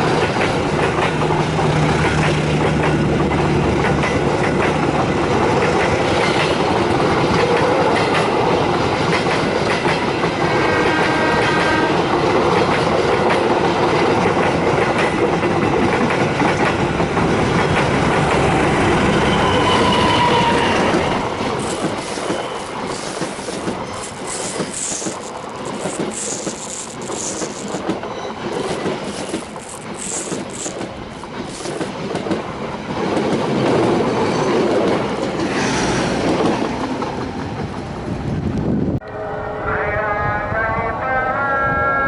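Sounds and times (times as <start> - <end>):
high-pitched wheel squeals: 19.2 - 21.2
train wheels clattering: 19.6 - 37.8.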